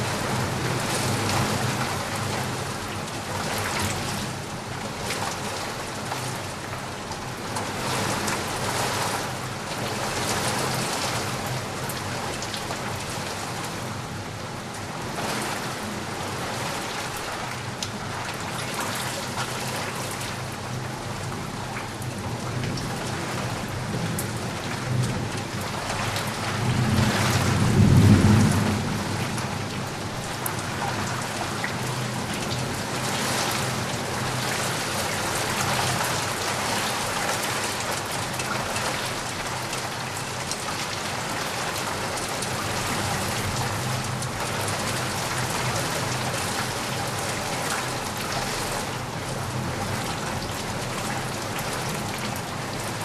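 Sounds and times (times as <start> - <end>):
rain pattering: 0.0 - 53.0
low thunder roll: 26.7 - 29.8.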